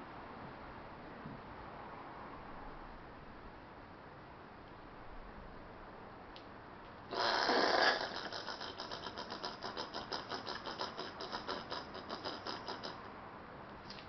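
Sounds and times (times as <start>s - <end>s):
possum rapid pulsing chatter: 7.1s - 13.0s
possum hissing: 7.1s - 13.1s.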